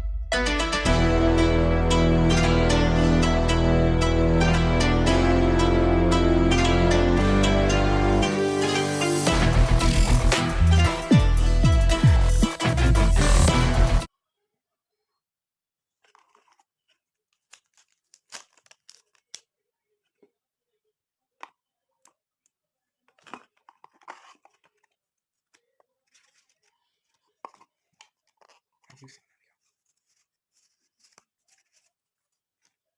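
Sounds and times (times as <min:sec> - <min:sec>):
packaging tearing: 0:16.0 - 0:19.5
packaging clicks and taps: 0:23.1 - 0:26.7.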